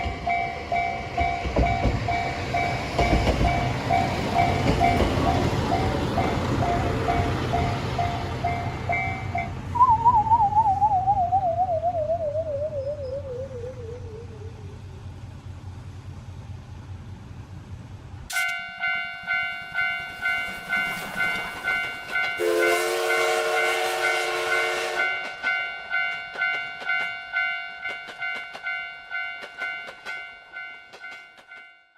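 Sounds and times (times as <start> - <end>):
train wheels clicking over rail joints: 0.0 - 9.7, 18.1 - 31.9
railroad crossing alarm ringing: 0.0 - 14.6, 18.3 - 31.9
low hum: 6.6 - 18.3
warbling tone sliding down: 9.8 - 14.9
train horn: 22.4 - 25.2.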